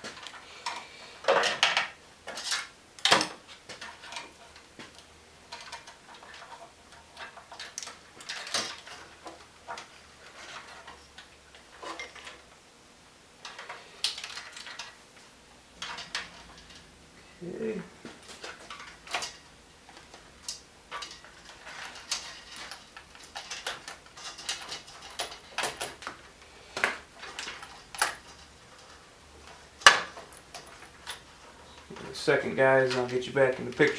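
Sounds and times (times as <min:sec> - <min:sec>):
tools and parts clicking: 0:00.0 - 0:12.6, 0:13.4 - 0:15.0, 0:15.8 - 0:17.0, 0:18.0 - 0:33.9
hands rustling wire: 0:00.0 - 0:12.7, 0:13.3 - 0:33.9.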